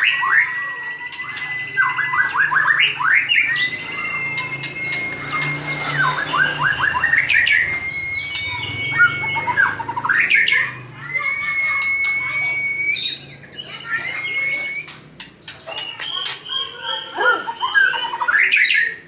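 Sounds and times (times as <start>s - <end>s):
bird whistled notes: 0.0s - 19.0s
bird chirp runs: 1.2s - 18.9s
sharp clicking bird notes: 2.9s - 12.9s, 14.8s - 16.6s.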